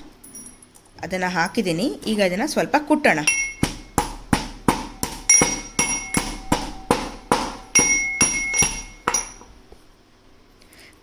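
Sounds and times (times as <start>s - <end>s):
pestle pounding in mortar: 3.2s - 9.6s.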